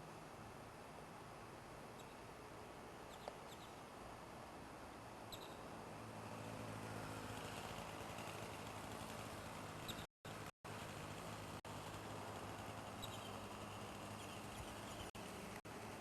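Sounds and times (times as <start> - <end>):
high bird chirps: 5.3 - 5.6.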